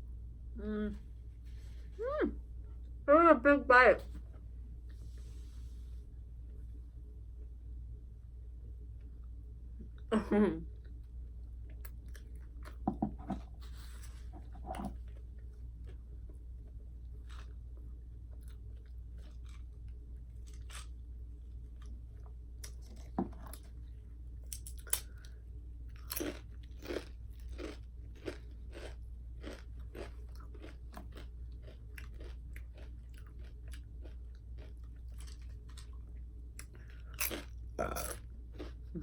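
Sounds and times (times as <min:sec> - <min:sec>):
steady low hum: 0:00.0 - 0:39.0
person chewing crunchy food: 0:11.6 - 0:39.0.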